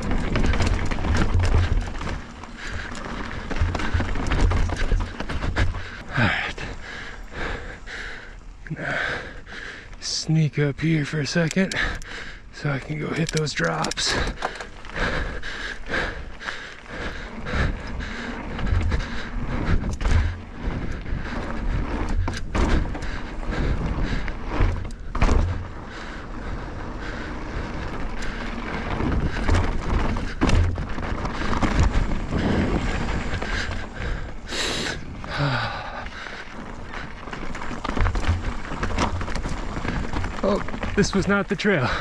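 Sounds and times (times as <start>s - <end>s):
bike landing thuds and rattles: 0.0s - 6.5s, 13.7s - 15.4s, 16.1s - 26.2s, 27.1s - 41.0s
bike tyres rolling on rock: 0.0s - 42.0s.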